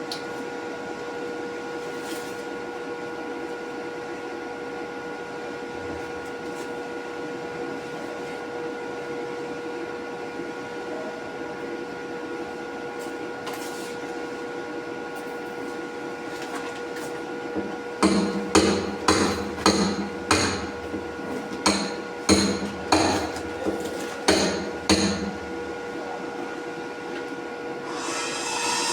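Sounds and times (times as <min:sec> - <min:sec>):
machine hum with whining tones: 0:13.8 - 0:28.9.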